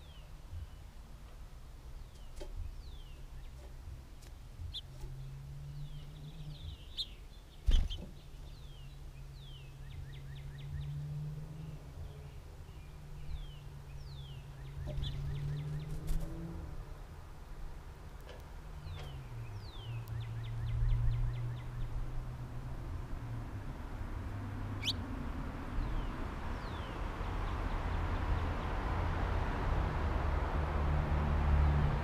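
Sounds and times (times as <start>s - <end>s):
songbirds chip notes: 0.0s - 16.8s, 18.1s - 23.7s, 24.3s - 28.8s
rapid ticking bird calls: 4.6s - 11.0s, 24.8s - 25.1s.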